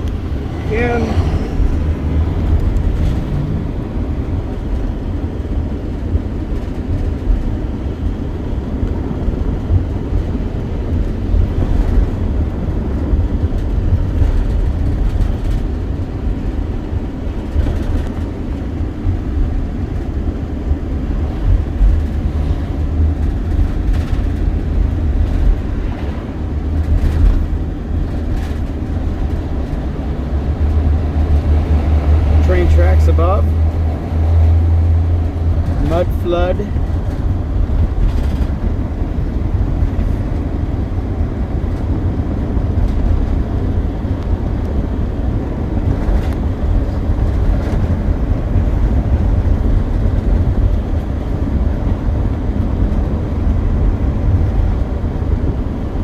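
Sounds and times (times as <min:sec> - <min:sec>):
vehicle low rumble: 0:00.0 - 0:56.0.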